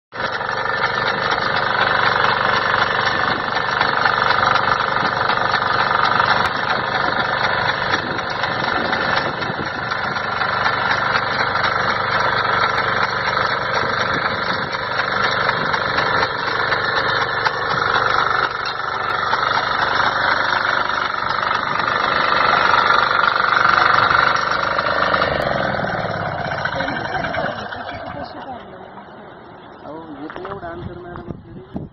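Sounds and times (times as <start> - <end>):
small tiller engine running: 0.1 - 31.3.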